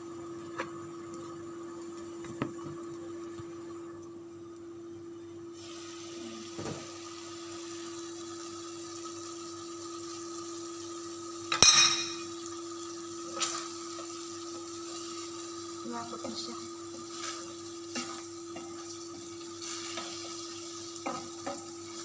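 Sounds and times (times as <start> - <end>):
sauce simmering in a pan: 0.0 - 11.5, 12.2 - 22.0
metal utensil knocking on pan: 11.6 - 12.3.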